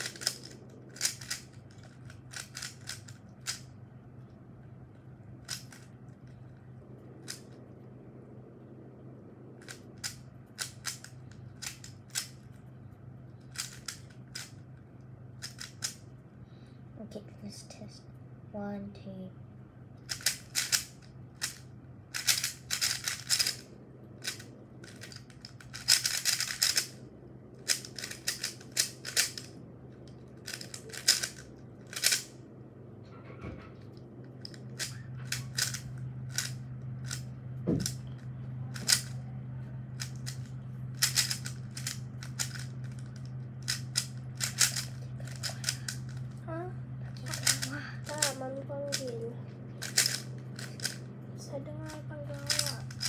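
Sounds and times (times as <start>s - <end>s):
plastic puzzle cube clicking: 0.0s - 3.7s, 5.4s - 5.9s, 9.6s - 12.5s, 13.4s - 14.6s, 15.4s - 16.0s, 20.0s - 23.6s, 24.2s - 27.0s, 27.6s - 29.5s, 30.4s - 32.3s, 34.4s - 39.1s, 40.0s - 46.2s, 47.2s - 49.1s, 49.8s - 51.0s, 52.3s - 53.0s
steady low hum: 0.0s - 53.0s.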